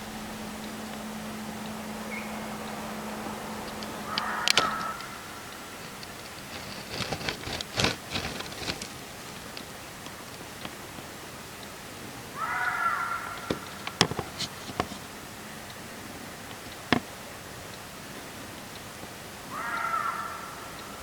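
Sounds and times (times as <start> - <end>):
deer harsh calls: 0.0 - 6.8, 12.2 - 17.5, 19.3 - 21.0
sharp clicks: 0.0 - 21.0.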